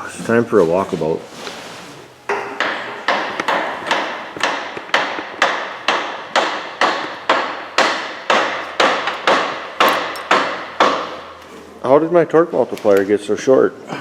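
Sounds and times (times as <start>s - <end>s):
hammer blows ringing: 5.5s - 11.4s.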